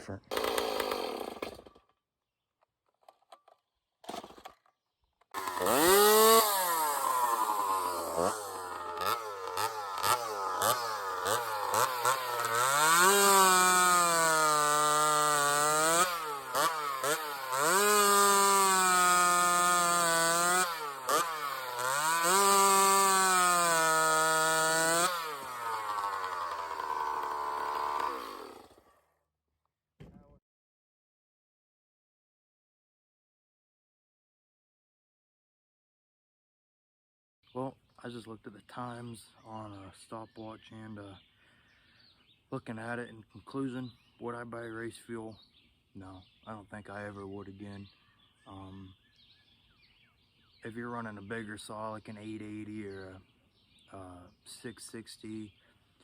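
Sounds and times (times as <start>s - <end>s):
chainsaw cutting wood: 0.2s - 2.0s, 3.1s - 29.0s.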